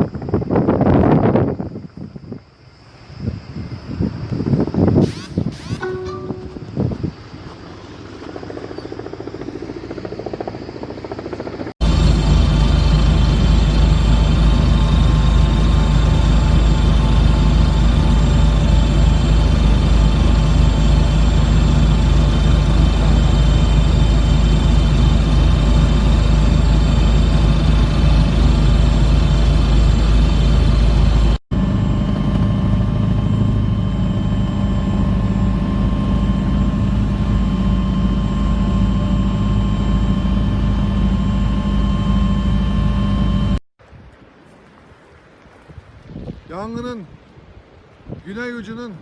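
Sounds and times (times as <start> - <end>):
helicopter engine and rotor: 3.8 - 43.6
steady tones: 5.7 - 7.0.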